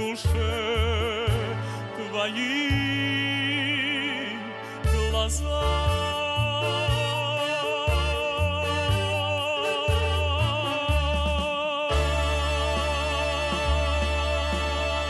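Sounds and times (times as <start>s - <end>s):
moving bass line accompaniment: 0.0s - 15.0s
song with vibrato held note: 4.0s - 15.0s.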